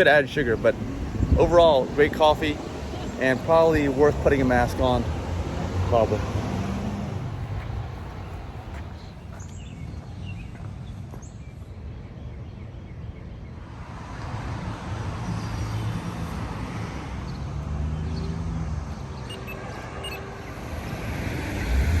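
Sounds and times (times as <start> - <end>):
tyre noise: 0.0 - 9.5
vehicle engine hum: 0.0 - 9.6, 14.3 - 22.0.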